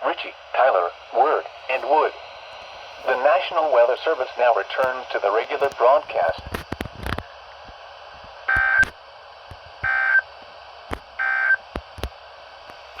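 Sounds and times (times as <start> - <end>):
faint radio hiss: 0.0 - 7.3
static clicks: 4.7 - 10.0, 10.9 - 13.0.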